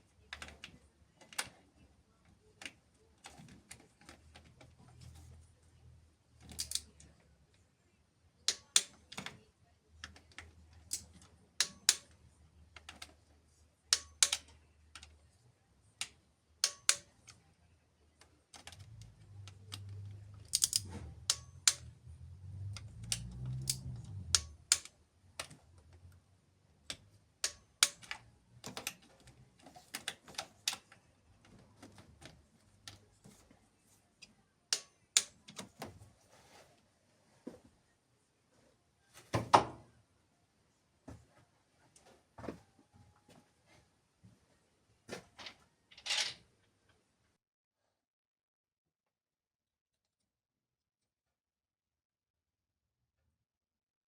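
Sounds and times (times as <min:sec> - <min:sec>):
tools clicking and tapping: 0:06.4 - 0:07.1, 0:08.5 - 0:09.4, 0:10.0 - 0:13.2, 0:13.9 - 0:15.2, 0:16.0 - 0:17.5, 0:18.5 - 0:26.2, 0:26.8 - 0:33.4, 0:34.2 - 0:35.9.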